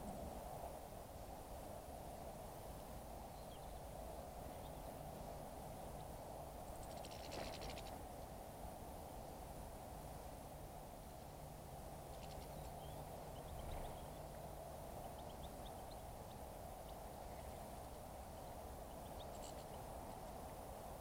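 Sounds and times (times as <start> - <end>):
steady background hiss: 0.0 - 21.0
small birds chirping: 3.2 - 5.0, 5.7 - 8.0, 12.0 - 20.6.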